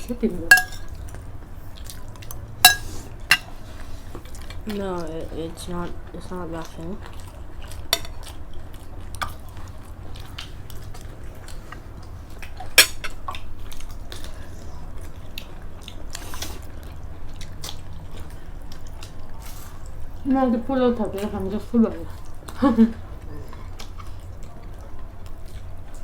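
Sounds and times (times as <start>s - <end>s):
utensils clicking on plates: 0.0s - 1.0s, 2.6s - 3.5s
people chewing and biting: 0.0s - 4.7s, 6.2s - 20.2s, 22.2s - 26.0s
sharp clink: 0.5s - 0.9s, 2.7s - 3.5s.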